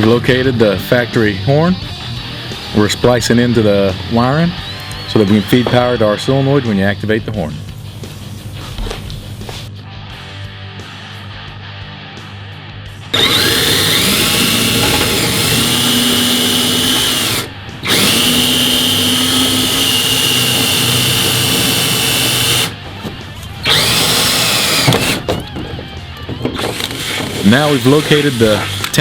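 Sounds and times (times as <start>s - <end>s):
power drill whine: 4.6s - 6.0s, 13.1s - 22.8s, 23.6s - 25.4s, 26.6s - 29.0s.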